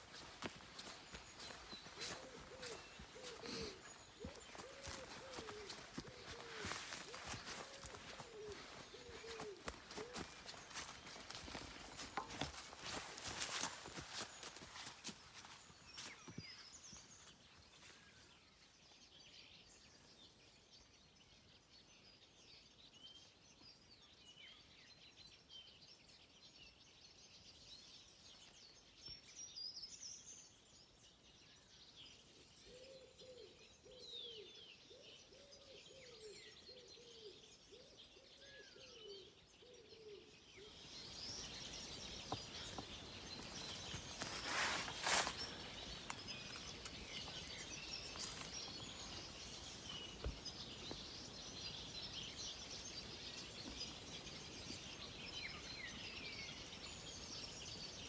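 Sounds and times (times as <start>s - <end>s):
low bird calls: 0.0s - 16.6s, 32.6s - 56.6s
birds chirping and singing: 0.0s - 18.0s, 29.6s - 58.0s.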